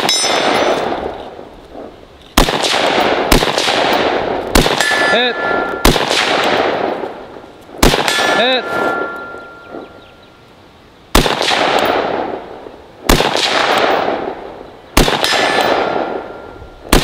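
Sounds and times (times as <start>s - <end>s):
struck steel ringing: 0.0s - 0.9s, 4.8s - 6.9s, 8.0s - 10.1s
rifle shots with rolling echo: 0.0s - 10.4s, 11.1s - 17.0s.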